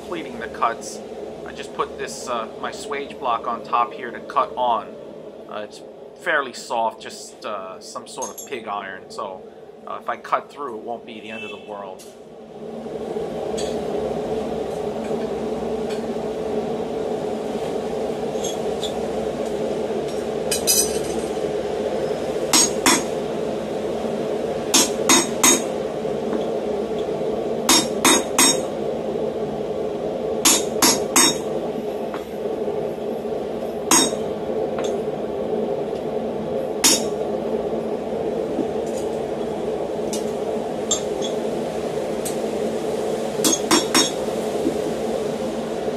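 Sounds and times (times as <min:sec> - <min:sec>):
steady hum: 0:00.0 - 0:45.9.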